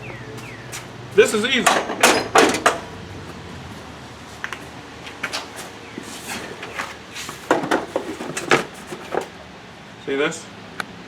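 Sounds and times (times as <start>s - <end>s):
clatter of knocks: 1.6s - 2.9s, 6.3s - 9.4s.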